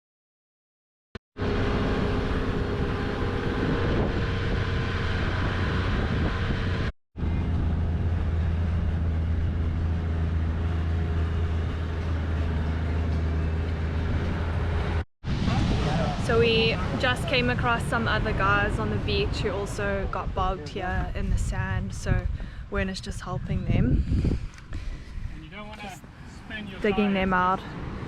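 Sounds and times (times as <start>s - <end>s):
vehicle engine droning: 1.4s - 22.6s.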